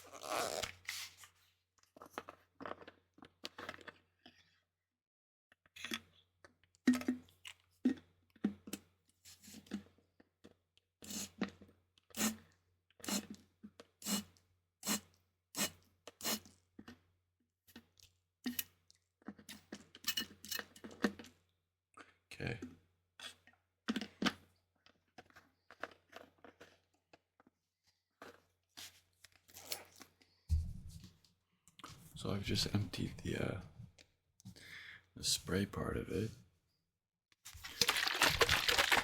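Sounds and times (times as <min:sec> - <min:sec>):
spray bottle spritzing: 0:37.6 - 0:39.0.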